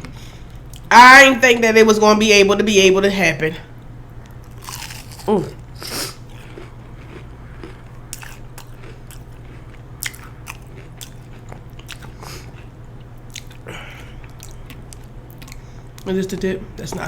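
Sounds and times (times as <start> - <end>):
low steady hum: 0.0 - 17.0
chewing crunchy food: 4.2 - 16.1.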